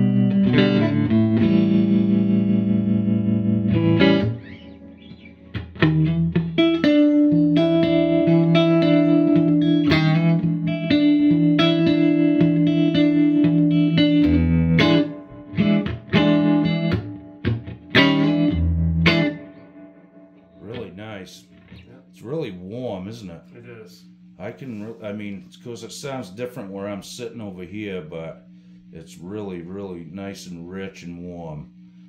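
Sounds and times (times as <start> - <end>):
electric guitar strummed chords: 0.0 - 22.3.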